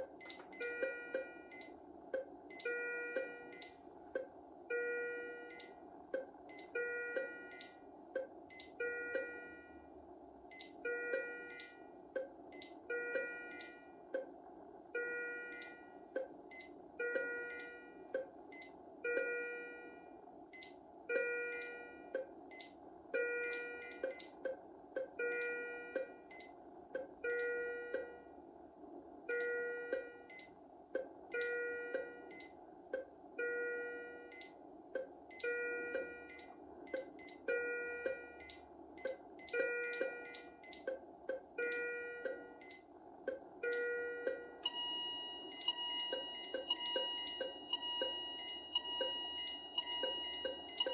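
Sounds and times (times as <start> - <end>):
patient monitor alarm chime: 39.5 - 40.8, 43.7 - 50.9.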